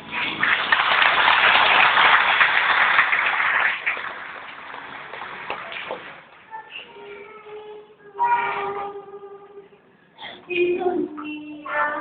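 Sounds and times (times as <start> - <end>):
audience applause: 0.0 - 6.3.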